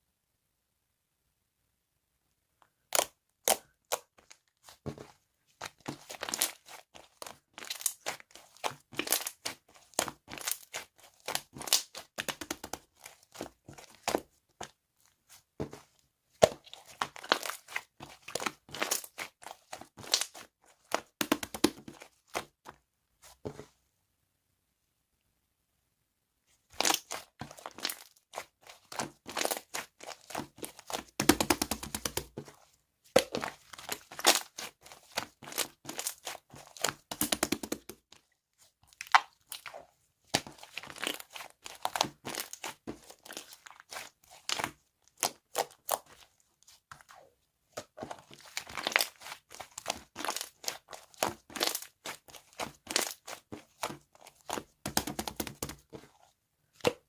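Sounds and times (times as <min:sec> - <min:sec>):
slime crackling and popping: 0:05.7 - 0:14.2, 0:16.4 - 0:22.4, 0:26.8 - 0:32.4, 0:33.2 - 0:38.0, 0:38.9 - 0:46.2, 0:47.9 - 0:55.8.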